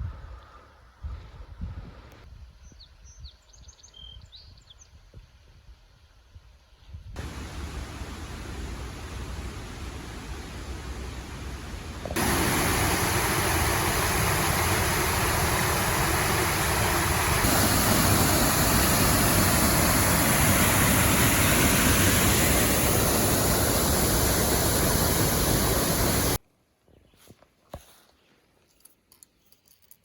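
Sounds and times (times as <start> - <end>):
waterfall roaring: 7.2 - 26.4.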